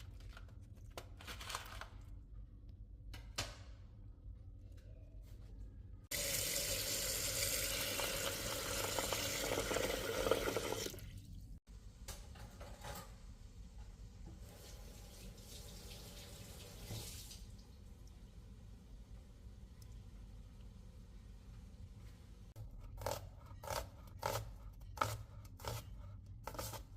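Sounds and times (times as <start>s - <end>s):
tap water running into sink: 6.1s - 11.1s, 14.5s - 17.6s.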